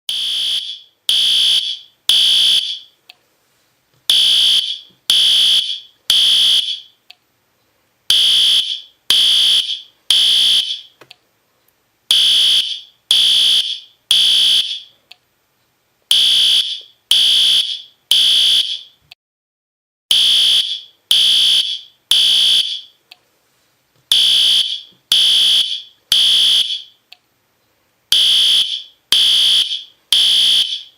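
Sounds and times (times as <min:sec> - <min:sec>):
fire alarm beeping: 0:00.1 - 0:03.0, 0:04.1 - 0:07.0, 0:08.1 - 0:11.0, 0:12.1 - 0:14.9, 0:16.1 - 0:19.0, 0:20.1 - 0:23.0, 0:24.1 - 0:27.0, 0:28.1 - 0:30.9.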